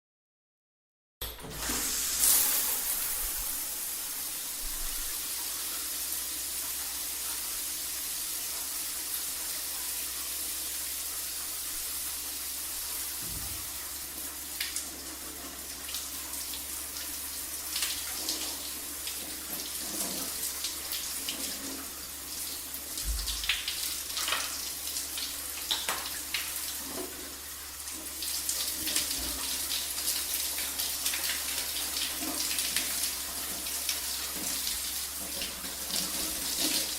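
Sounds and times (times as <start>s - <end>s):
shower spray running: 1.4s - 36.9s
water splashes: 23.0s - 24.6s.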